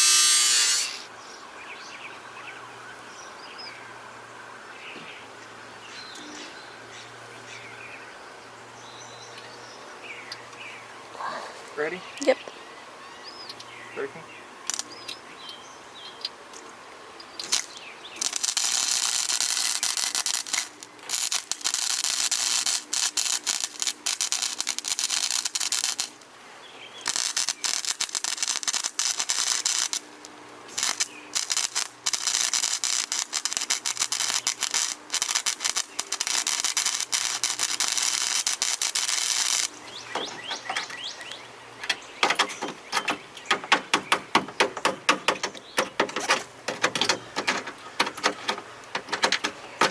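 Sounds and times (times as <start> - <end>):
welder crackling hiss: 0.0 - 1.1, 17.4 - 26.3, 27.0 - 39.8
sharp ticks and clicks: 17.2 - 26.2, 27.0 - 30.0, 30.7 - 39.8.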